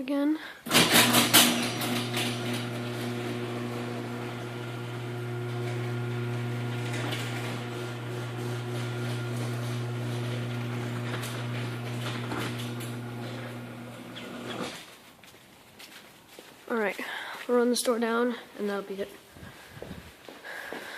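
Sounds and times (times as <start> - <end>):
garage door opener motor hum: 0.7 - 14.8.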